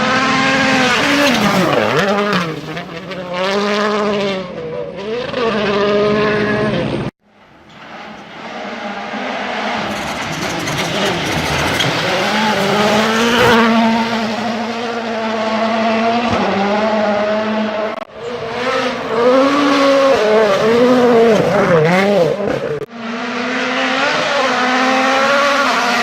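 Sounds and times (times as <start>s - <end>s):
tyre noise: 0.0s - 3.9s, 9.8s - 15.0s
rally car engines revving: 0.0s - 26.0s.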